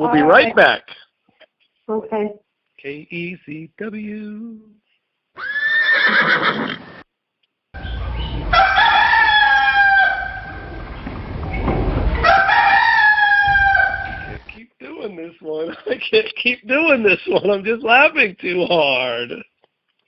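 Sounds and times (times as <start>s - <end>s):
rooster crowing: 7.8s - 11.0s, 12.1s - 14.4s.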